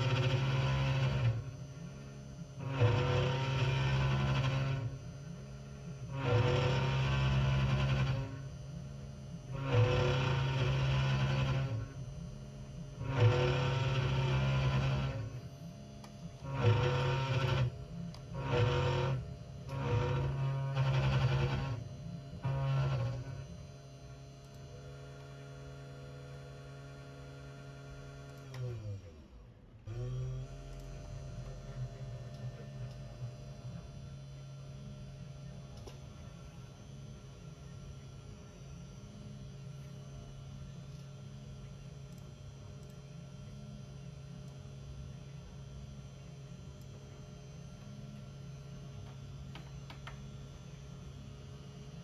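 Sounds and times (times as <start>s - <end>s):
router machine humming: 0.0s - 8.7s, 9.5s - 12.1s, 12.9s - 24.3s, 29.9s - 39.8s.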